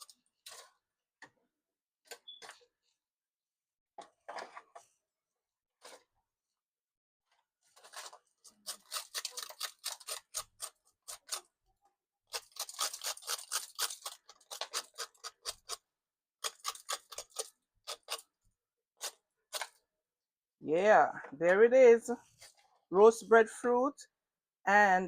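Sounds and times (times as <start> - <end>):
knife scraping food: 7.8 - 11.5, 12.3 - 15.8, 16.4 - 18.3.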